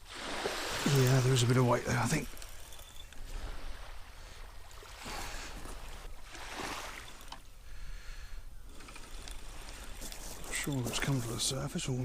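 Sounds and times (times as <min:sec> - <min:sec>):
small waves washing onto beach: 0:00.0 - 0:07.5, 0:08.7 - 0:12.0.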